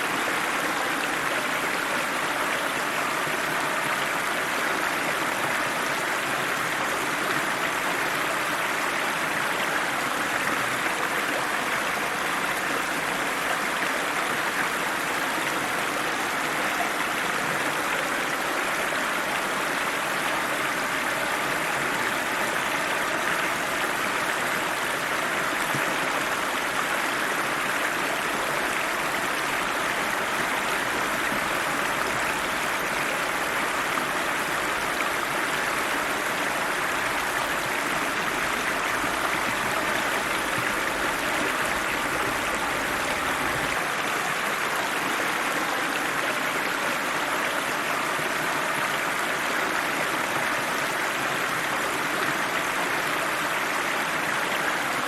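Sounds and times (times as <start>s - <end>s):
river rushing over rocks: 0.0s - 55.0s.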